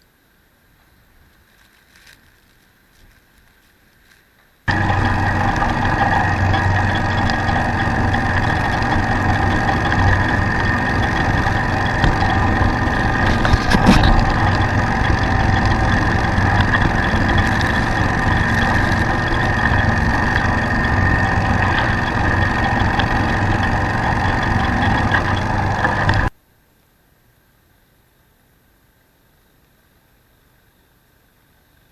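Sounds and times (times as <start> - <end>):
lawn tractor engine running: 4.7 - 26.3.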